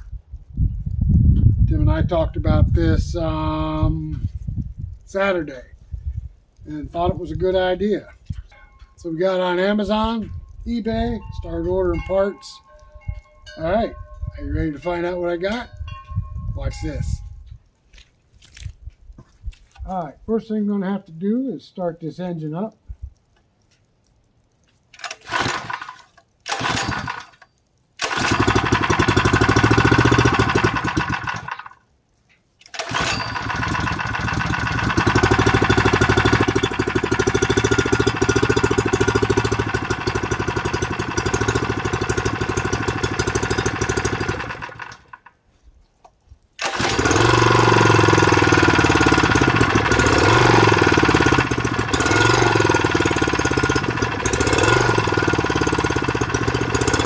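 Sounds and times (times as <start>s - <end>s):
small engine starting and running: 25.0s - 31.9s, 32.6s - 45.4s, 46.6s - 57.0s.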